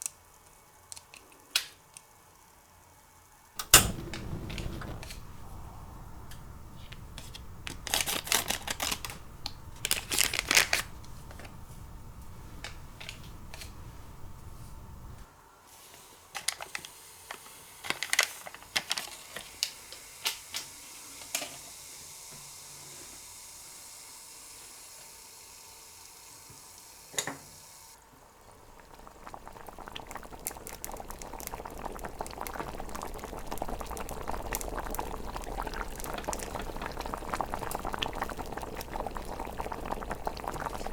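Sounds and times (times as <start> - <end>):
bubbling boiling sound: 3.6 - 15.3, 21.8 - 40.9.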